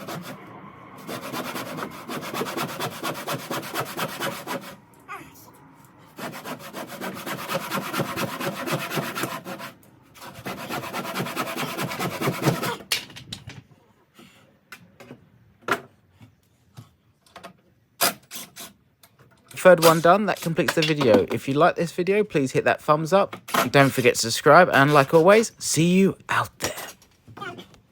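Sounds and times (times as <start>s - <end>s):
hand saw cutting timber: 0.0s - 0.4s, 1.0s - 4.8s, 6.2s - 12.9s, 19.8s - 21.3s, 23.4s - 25.3s.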